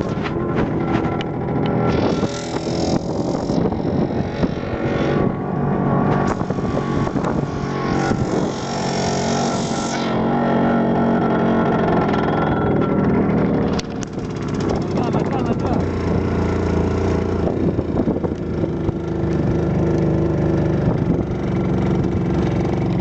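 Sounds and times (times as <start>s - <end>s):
rushing noise: 0.0s - 12.6s
vehicle engine running: 0.0s - 23.0s.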